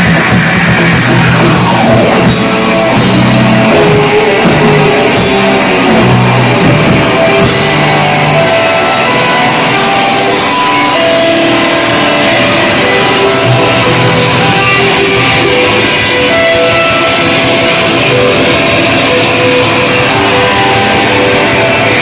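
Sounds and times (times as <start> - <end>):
loud live rock band: 0.0 - 22.0.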